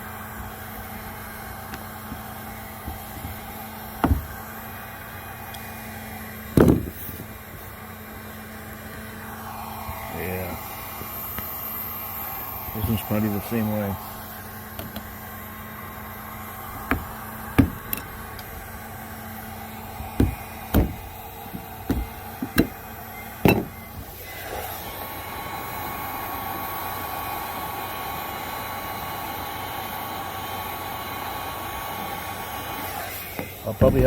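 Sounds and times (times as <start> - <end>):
heat gun blower running: 0.0 - 34.0
knocks and taps on hull: 4.0 - 4.3, 16.9 - 17.8, 20.2 - 22.7.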